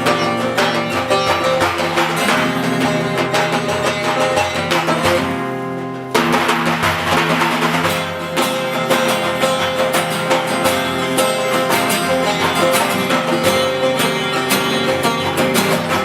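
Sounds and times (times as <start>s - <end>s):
plucked string instrument strumming: 0.0s - 16.0s.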